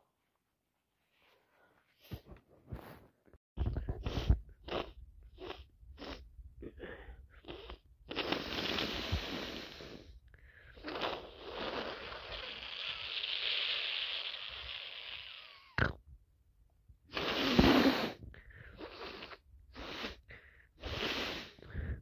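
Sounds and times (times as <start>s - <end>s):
person blowing nose: 3.9s - 6.2s, 7.4s - 10.1s, 10.7s - 15.7s, 17.1s - 22.0s
person sniffing: 3.9s - 15.7s, 17.1s - 22.0s.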